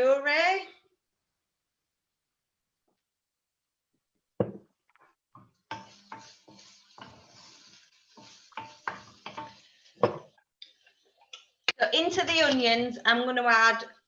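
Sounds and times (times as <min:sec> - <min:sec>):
kitchen utensils clinking: 0:05.7 - 0:10.4.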